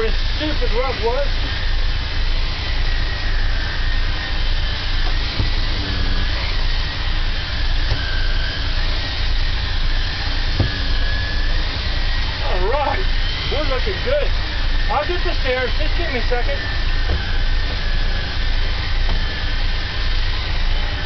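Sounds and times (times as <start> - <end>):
vacuum cleaner running: 0.0 - 21.0
faint knocks: 10.5 - 11.2.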